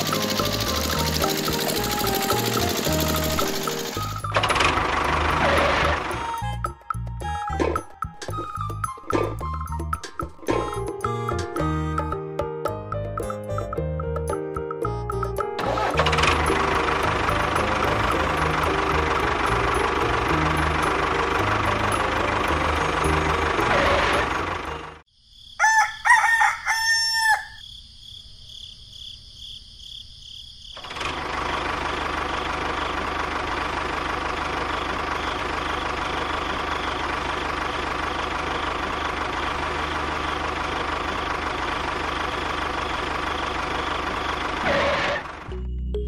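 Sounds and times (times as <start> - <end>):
small motor running: 0.0 - 6.4
rooster crowing: 25.5 - 27.7.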